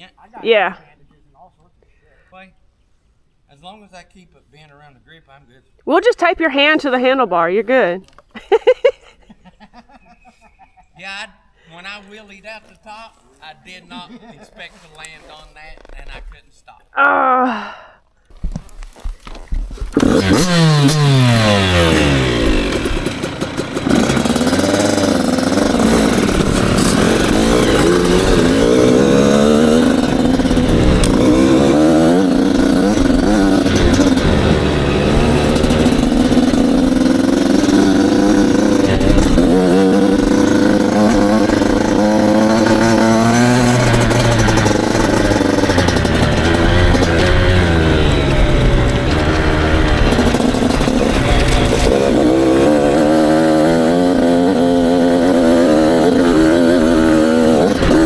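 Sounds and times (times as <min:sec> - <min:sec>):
dirt bike engine revving: 0:19.9 - 0:58.0.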